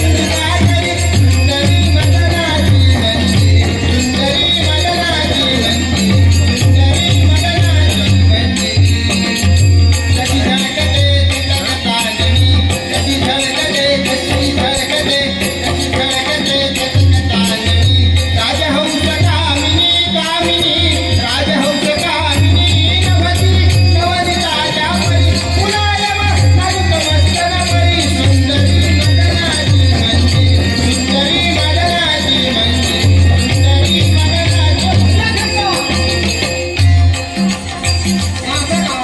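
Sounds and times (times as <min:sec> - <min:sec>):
drum beating steady rhythm: 0:00.0 - 0:39.0
jingling hand percussion: 0:00.0 - 0:39.0
wavering melody: 0:00.0 - 0:39.0.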